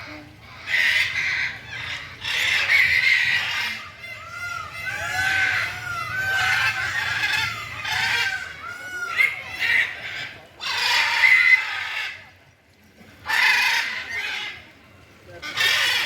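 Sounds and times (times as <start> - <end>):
geese honking: 0.6 - 12.1.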